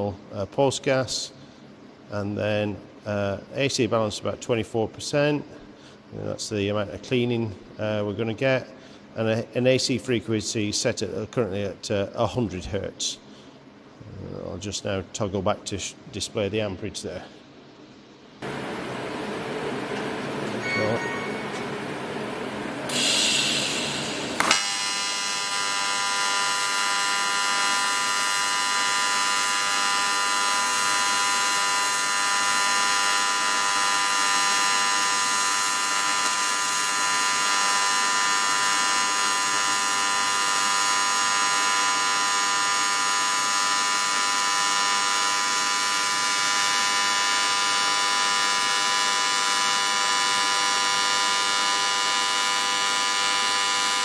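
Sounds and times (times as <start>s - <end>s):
welder hiss: 22.9s - 32.0s
welding arc crack and buzz: 22.9s - 54.0s.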